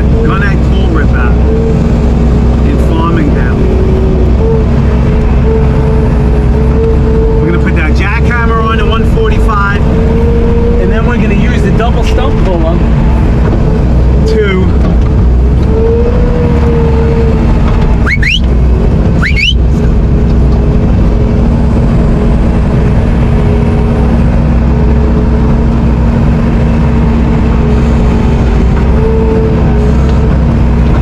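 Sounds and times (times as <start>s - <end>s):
track loader diesel engine: 0.0s - 31.0s
brief rising squeals: 18.0s - 18.5s, 19.2s - 19.6s.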